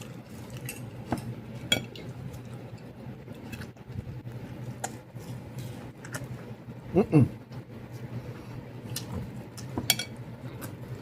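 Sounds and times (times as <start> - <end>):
low steady hum: 0.0 - 11.0
tableware clinking: 9.8 - 10.2.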